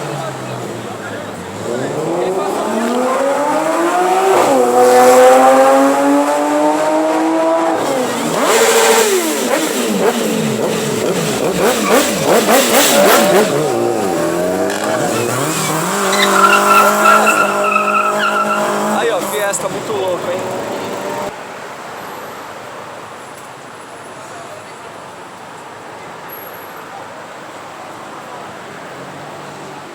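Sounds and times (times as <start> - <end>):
loud car exhausts accelerating: 0.0 - 21.3.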